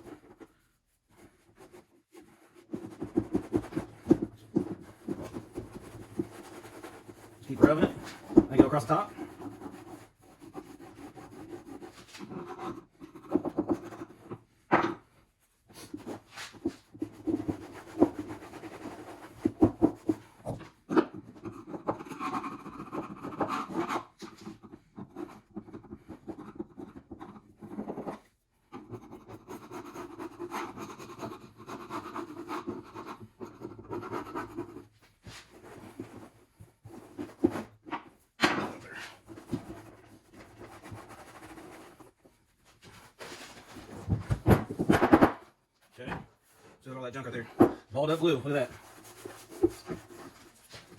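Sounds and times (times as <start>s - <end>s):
scraping and rubbing on metal: 4.9s - 14.3s, 46.4s - 50.9s.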